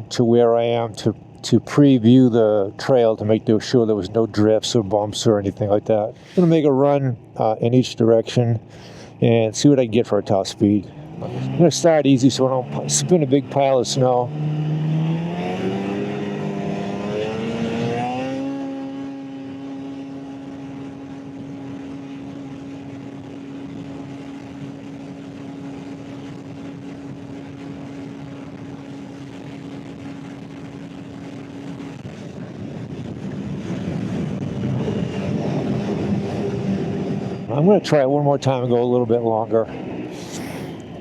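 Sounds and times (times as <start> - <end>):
snowmobile engine at full throttle: 0.0 - 41.0
wind noise: 14.3 - 37.8.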